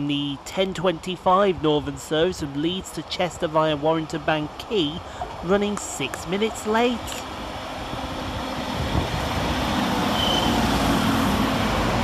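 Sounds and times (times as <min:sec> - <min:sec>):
train engine and wheel noise: 0:00.0 - 0:12.0
high squeal: 0:10.1 - 0:10.7.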